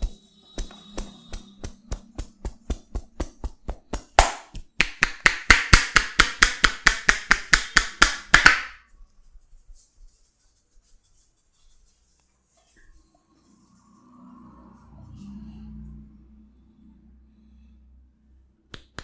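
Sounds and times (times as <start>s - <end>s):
hand massage slaps: 0.0s - 8.9s, 18.7s - 19.0s.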